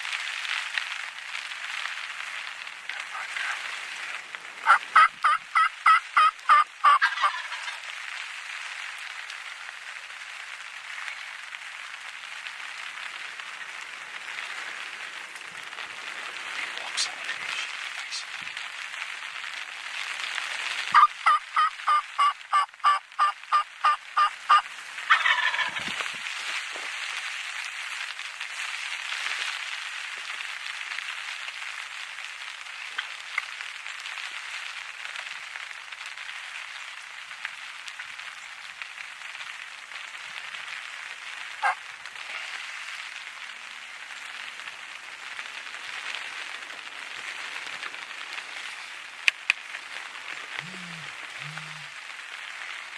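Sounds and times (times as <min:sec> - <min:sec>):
rain pattering: 0:00.0 - 0:52.9
turkey call yelps: 0:04.6 - 0:07.8, 0:20.9 - 0:25.9, 0:41.6 - 0:41.8, 0:50.6 - 0:51.9
wild turkey gobbling: 0:04.6 - 0:07.9, 0:20.9 - 0:26.0, 0:41.6 - 0:41.8, 0:50.6 - 0:51.9.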